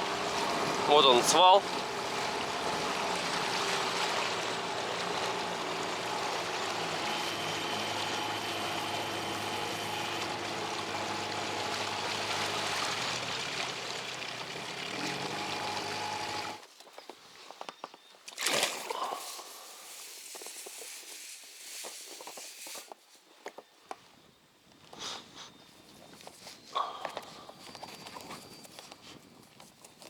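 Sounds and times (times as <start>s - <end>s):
outboard motor running: 0.0s - 16.6s.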